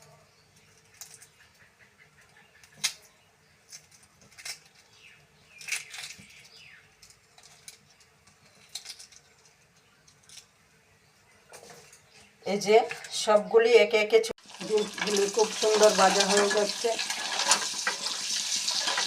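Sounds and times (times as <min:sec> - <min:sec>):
eggs frying in hot oil: 0:14.4 - 0:19.0.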